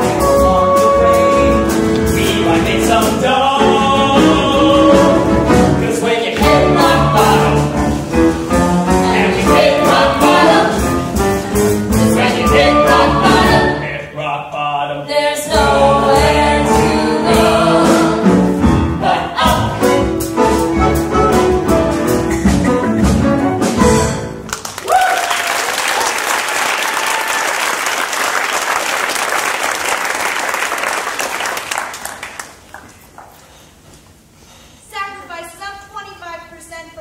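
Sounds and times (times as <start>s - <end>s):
audience applause: 24.5s - 33.4s.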